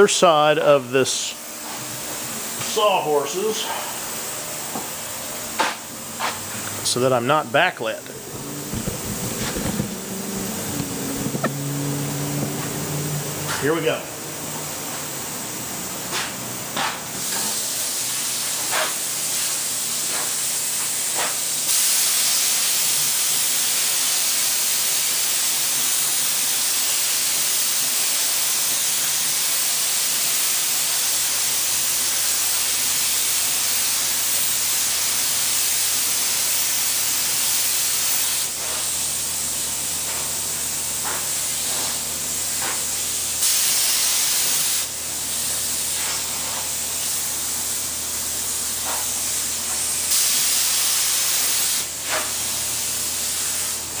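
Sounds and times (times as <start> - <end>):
sprayer hissing: 6.2 - 13.6.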